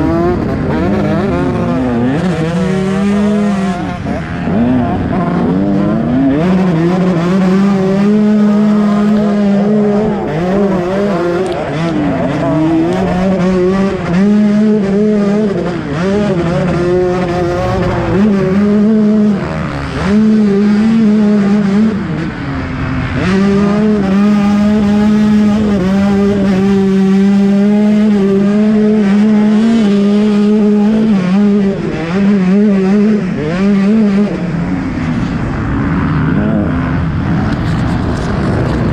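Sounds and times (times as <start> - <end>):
two-stroke motocross engine revving: 0.0 - 38.9.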